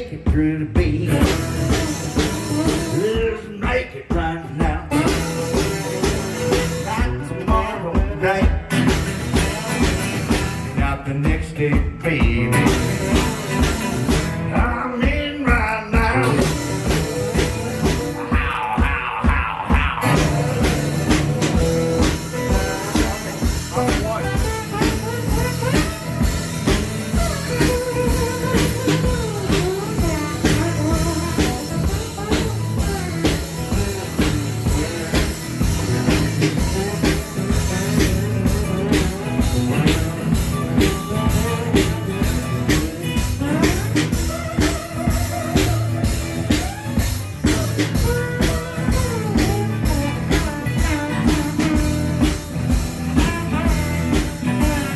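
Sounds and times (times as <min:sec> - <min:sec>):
drum kit beat: 0:00.0 - 0:54.9
electric guitar lead: 0:11.8 - 0:14.8, 0:16.0 - 0:54.9.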